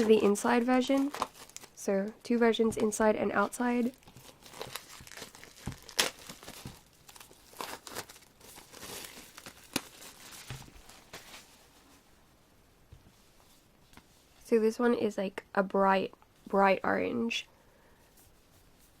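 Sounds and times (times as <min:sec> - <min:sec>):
packaging crinkling and tearing: 0:00.0 - 0:01.8, 0:03.7 - 0:11.4.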